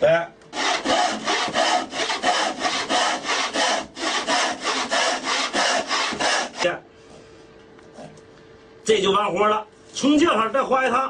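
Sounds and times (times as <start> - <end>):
hand saw cutting wood: 0.6 - 6.7.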